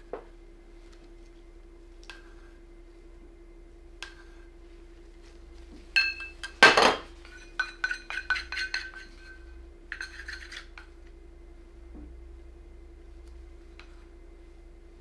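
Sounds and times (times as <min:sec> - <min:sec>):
utensil clinking against containers: 0:06.0 - 0:10.7.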